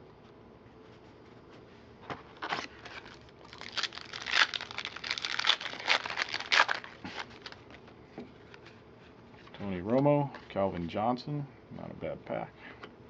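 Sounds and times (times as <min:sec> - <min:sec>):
plastic wrapper tearing and crinkling: 0:02.5 - 0:07.9.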